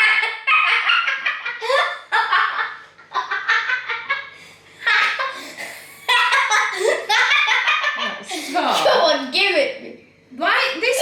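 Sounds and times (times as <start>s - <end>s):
people laughing: 0.0s - 5.4s, 6.0s - 9.2s.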